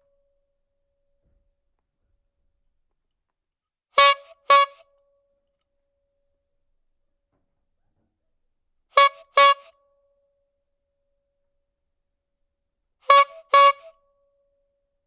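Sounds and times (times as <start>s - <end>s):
squeeze-bulb horn honking: 4.0s - 4.8s, 13.1s - 14.0s.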